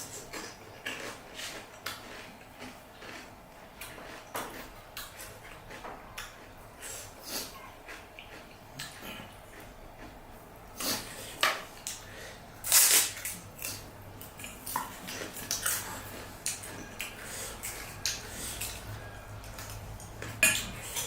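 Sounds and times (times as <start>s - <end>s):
crunching crisp shells: 0.0s - 7.0s, 11.8s - 21.0s.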